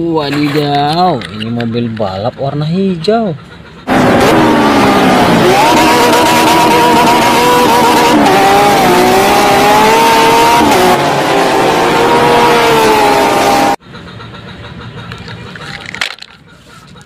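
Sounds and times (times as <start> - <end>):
race car engine revving: 3.7 - 13.8.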